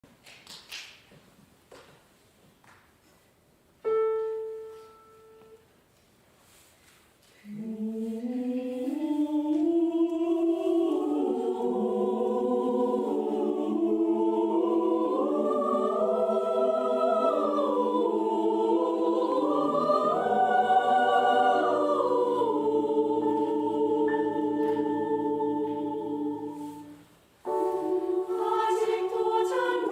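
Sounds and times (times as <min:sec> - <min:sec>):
mixed choir singing: 0:07.4 - 0:29.9.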